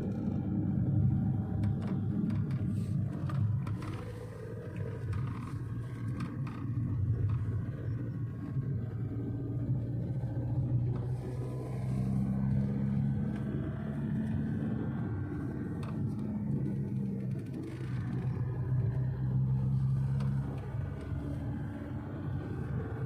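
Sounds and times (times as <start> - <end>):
vehicle engine running: 0.0 - 23.0.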